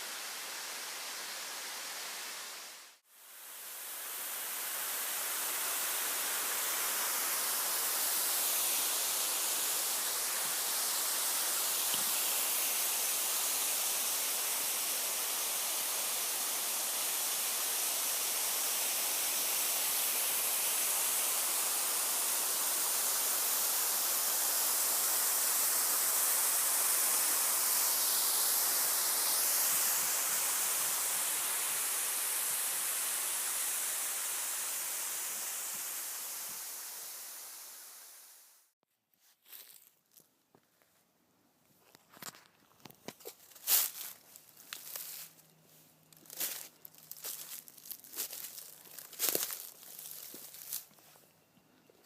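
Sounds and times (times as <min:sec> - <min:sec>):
flowing water rushing: 0:03.4 - 0:38.4.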